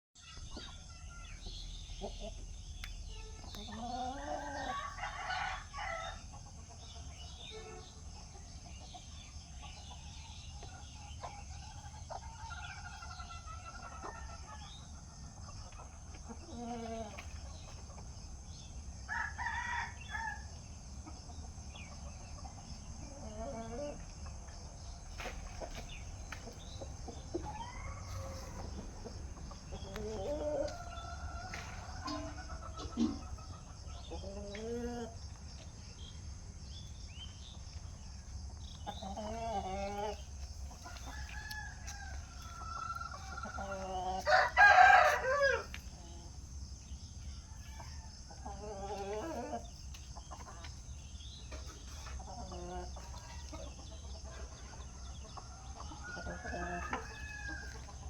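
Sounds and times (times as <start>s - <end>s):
hens clucking: 0.3s - 18.5s, 20.9s - 35.8s, 36.9s - 58.0s
rooster crowing: 19.1s - 20.5s, 41.1s - 45.8s.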